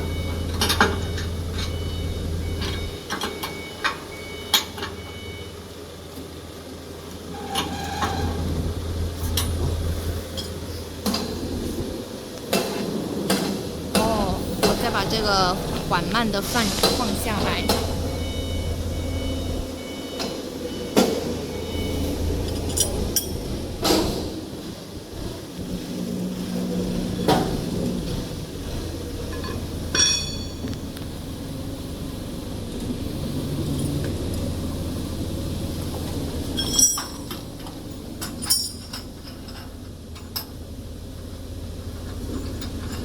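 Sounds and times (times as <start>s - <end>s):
metal tools clinking: 36.6s - 37.4s, 38.4s - 39.7s.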